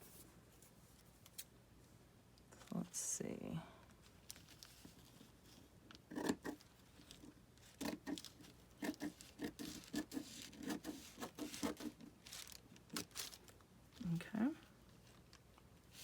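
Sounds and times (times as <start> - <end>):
paper rustling and crackling: 3.9 - 14.3.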